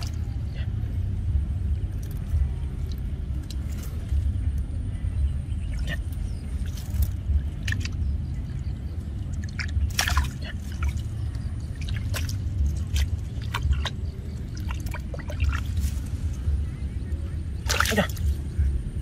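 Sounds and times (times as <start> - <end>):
mud squelching: 0.0 - 19.0
water splashing: 5.6 - 16.8, 17.5 - 18.6
water sloshing: 5.6 - 18.8
wet clicks: 5.8 - 8.6.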